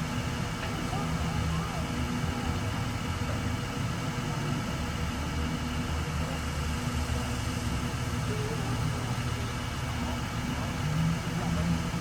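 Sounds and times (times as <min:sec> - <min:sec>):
motor engine running: 0:00.0 - 0:12.0.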